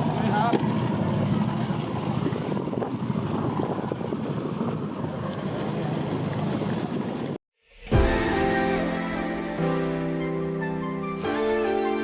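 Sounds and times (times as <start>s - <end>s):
motorboat engine rumble: 0.0s - 12.0s
rushing water: 0.0s - 12.0s
wind buffeting microphone: 0.6s - 7.4s.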